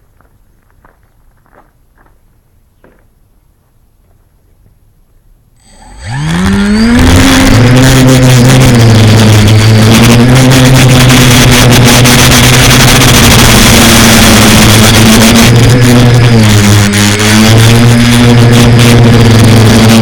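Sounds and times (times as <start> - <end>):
quadcopter motors buzzing: 5.6 - 20.0.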